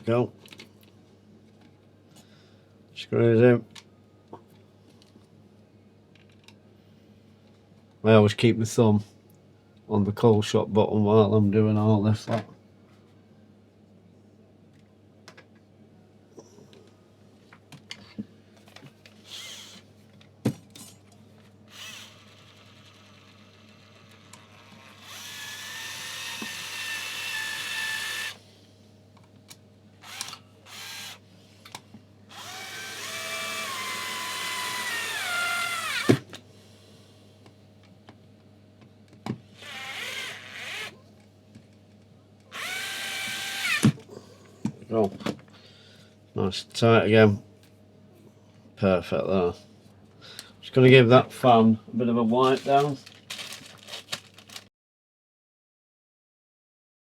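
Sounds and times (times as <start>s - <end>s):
electric screwdriver whining: 19.3s - 19.8s, 21.7s - 22.5s, 24.1s - 28.4s, 30.0s - 31.2s, 32.3s - 36.2s, 39.6s - 41.0s, 42.5s - 44.0s.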